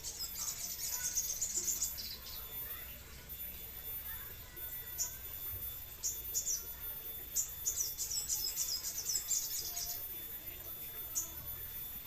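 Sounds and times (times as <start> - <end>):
songbird chirping and twittering: 0.0 - 12.0.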